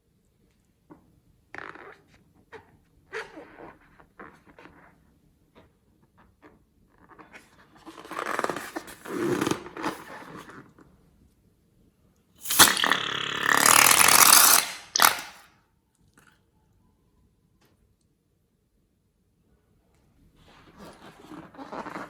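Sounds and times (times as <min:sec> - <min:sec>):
slime squelching: 0:12.4 - 0:15.4.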